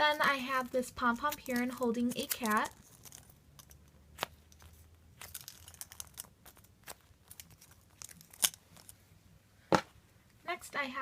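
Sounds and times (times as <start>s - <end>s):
foam toy rustling and crinkling: 0.0s - 9.2s.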